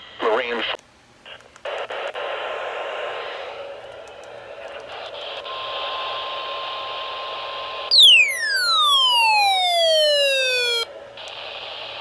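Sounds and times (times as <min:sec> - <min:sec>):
faint steady high tone: 0:07.9 - 0:10.9
falling electronic whistle: 0:07.9 - 0:10.9.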